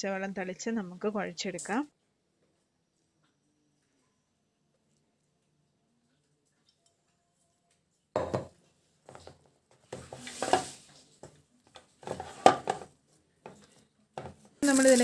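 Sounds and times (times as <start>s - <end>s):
dough scraping in steel bowl: 9.9s - 11.0s, 14.6s - 15.0s.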